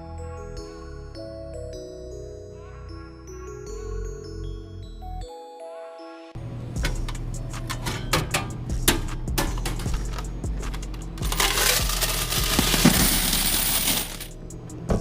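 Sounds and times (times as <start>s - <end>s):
coins clinking: 9.4s - 14.4s
coins pouring and rattling: 9.6s - 14.4s.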